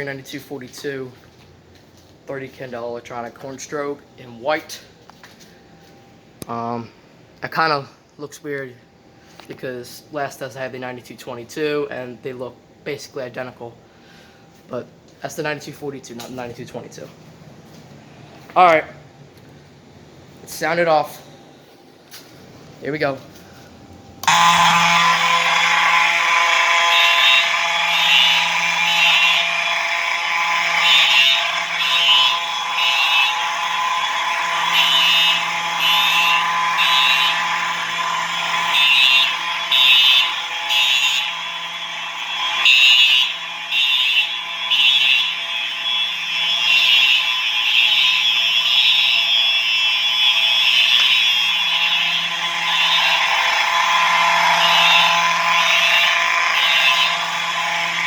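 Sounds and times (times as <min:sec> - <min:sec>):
electronic horn tones: 0:24.2 - 0:58.0
low rasping alarm horn buzz: 0:24.2 - 0:58.0
short high-pitched pulses: 0:24.2 - 0:58.0.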